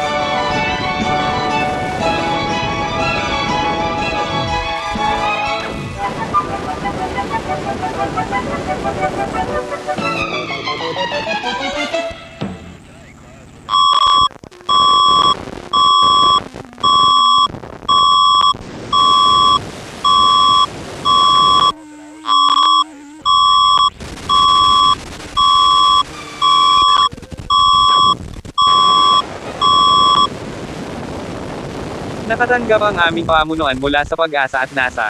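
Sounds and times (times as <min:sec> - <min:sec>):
electronic alert beeps: 0:13.7 - 0:30.3.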